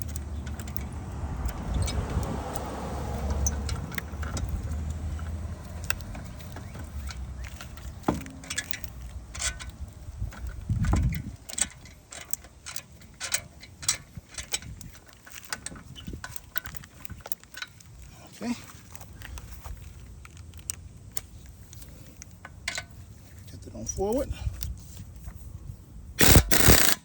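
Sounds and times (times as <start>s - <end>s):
metal tools clinking: 3.2s - 10.6s.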